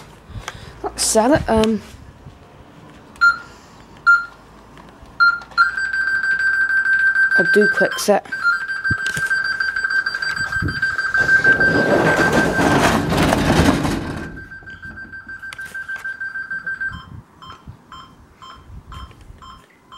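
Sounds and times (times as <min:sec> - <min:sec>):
alarm fluttering tone and beeps: 0:05.2 - 0:13.3
loud rustling: 0:10.2 - 0:14.6.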